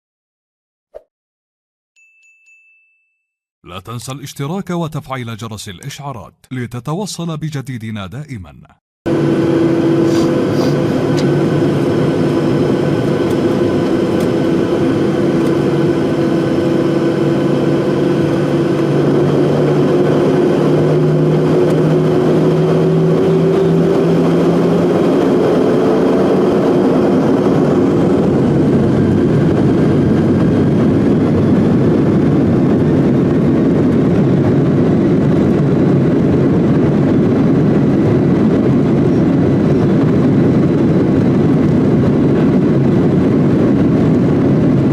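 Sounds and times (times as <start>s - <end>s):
jet engines spooling up: 9.1s - 44.9s
loud jet engine rush: 9.1s - 44.9s.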